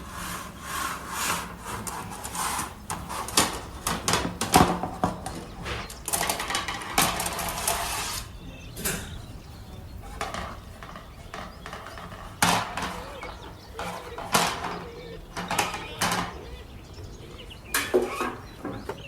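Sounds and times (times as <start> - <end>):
scraping rush: 0.0 - 8.5
sharp knocks: 1.3 - 8.2, 8.8 - 16.7
metal parts and tools clattering: 1.7 - 16.6, 17.7 - 19.0.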